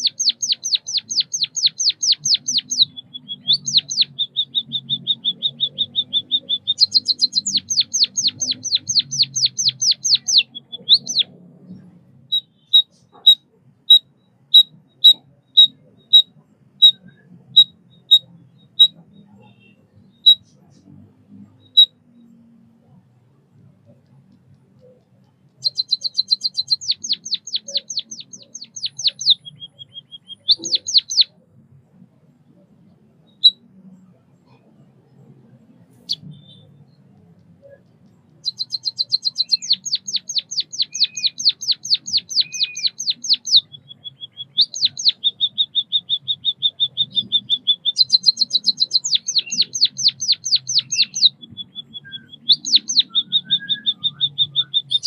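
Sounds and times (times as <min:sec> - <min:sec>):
bird buzzy trills: 0:00.0 - 0:11.4, 0:25.5 - 0:31.3, 0:38.3 - 0:55.0
bird song of high clicking notes: 0:00.0 - 0:11.4, 0:12.3 - 0:20.9, 0:21.5 - 0:22.5, 0:23.8 - 0:31.4, 0:35.9 - 0:55.0.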